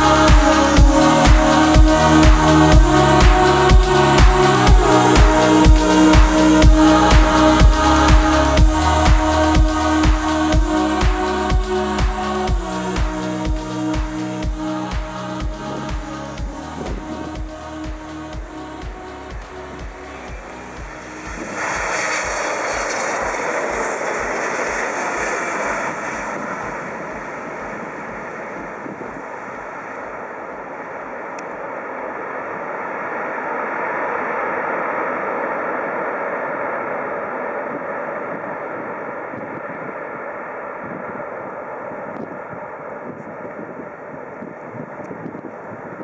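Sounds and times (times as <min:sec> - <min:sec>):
airliner passing overhead: 0:20.2 - 0:31.4.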